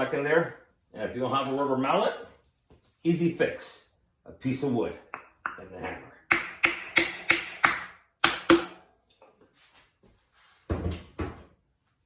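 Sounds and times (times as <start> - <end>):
hammer knocking on wood: 6.3 - 8.8.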